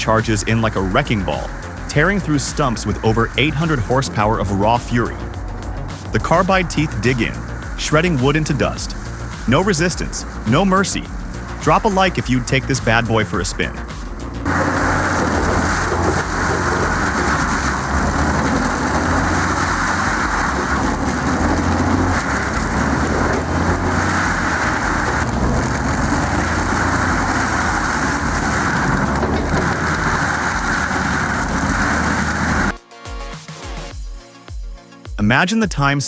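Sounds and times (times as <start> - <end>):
low engine hum: 13.7 - 32.7
shredder grinding stumps: 14.5 - 32.7.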